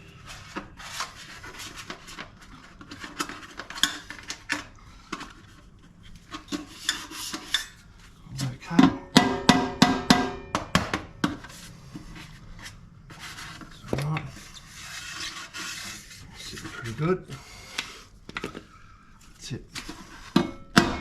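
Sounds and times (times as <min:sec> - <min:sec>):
sharp knocks on thin metal: 0:08.8 - 0:11.3, 0:20.5 - 0:21.0.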